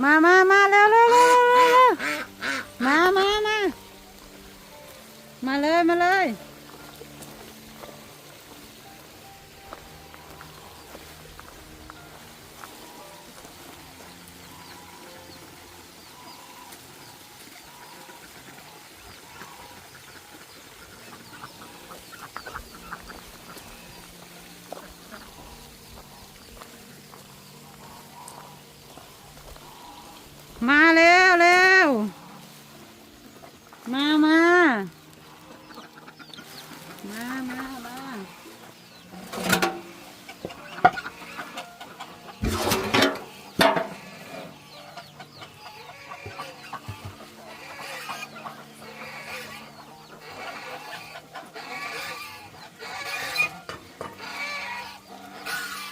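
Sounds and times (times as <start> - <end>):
chickens clucking: 0.0 - 55.9
faint poultry calls: 0.0 - 55.9.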